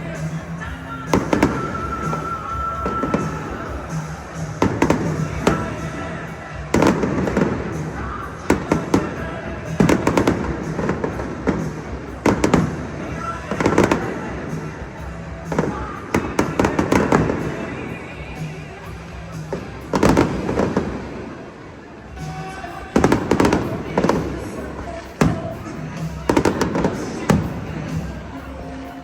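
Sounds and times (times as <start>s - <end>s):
fireworks bursting with echo: 0.0s - 29.0s.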